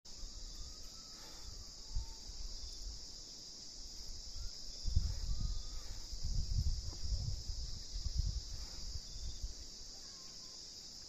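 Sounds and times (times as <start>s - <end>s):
faint bird calls: 0.1s - 2.6s, 9.2s - 10.8s
crickets chirping: 0.1s - 11.0s.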